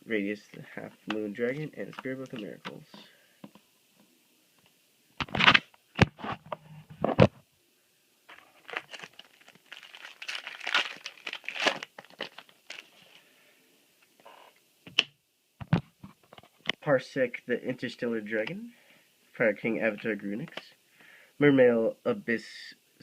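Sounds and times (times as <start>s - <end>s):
foil wrapper tearing: 8.3s - 13.0s
wrapper crinkling: 8.3s - 13.2s.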